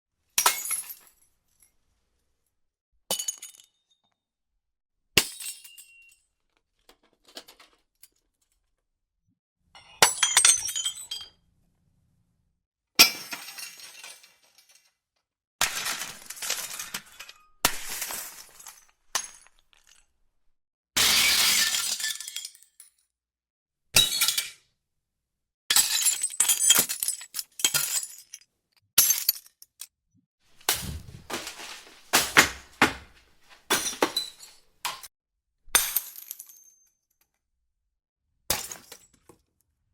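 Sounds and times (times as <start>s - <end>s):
glass shattering: 15.6s - 20.0s, 30.7s - 35.0s.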